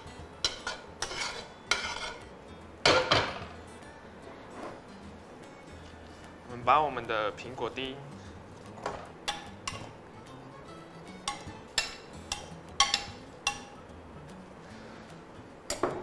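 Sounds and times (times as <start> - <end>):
spoon clinking against bowl: 11.2 - 13.8.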